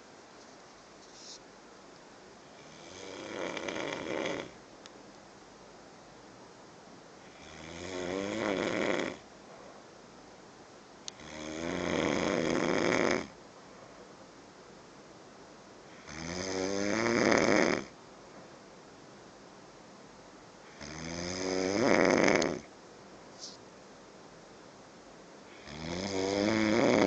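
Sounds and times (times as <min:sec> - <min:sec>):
person snoring: 0:02.5 - 0:04.6, 0:07.2 - 0:09.2, 0:11.2 - 0:13.4, 0:15.9 - 0:17.9, 0:20.7 - 0:22.7, 0:25.5 - 0:27.0.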